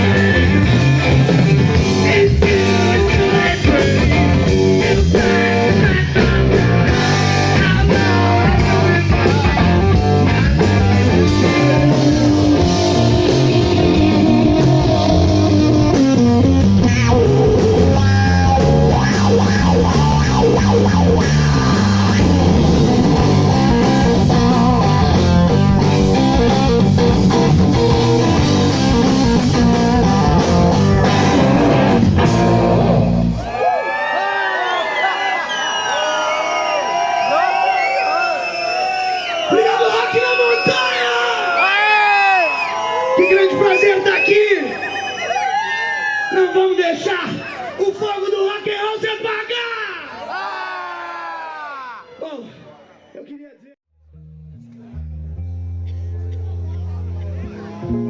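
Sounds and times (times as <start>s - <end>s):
distorted electric guitar: 0.0s - 33.5s, 54.1s - 58.0s
bass guitar: 0.0s - 33.6s, 54.0s - 58.0s
drums: 0.0s - 34.3s.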